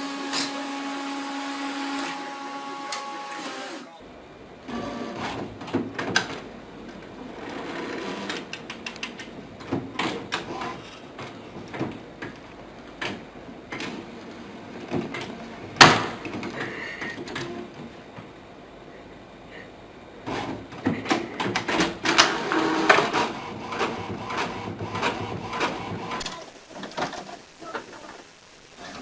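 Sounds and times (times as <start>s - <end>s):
printer mechanism clattering: 5.1s - 6.5s, 7.5s - 12.4s, 20.3s - 27.4s.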